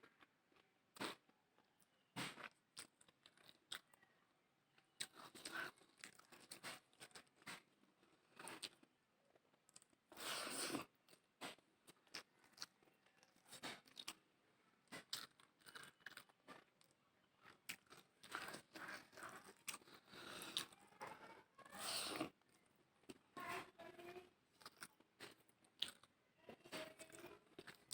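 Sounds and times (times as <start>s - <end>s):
person chewing: 2.2s - 4.0s, 5.0s - 8.9s, 9.5s - 14.2s, 14.9s - 20.8s, 24.5s - 26.1s, 27.0s - 27.9s.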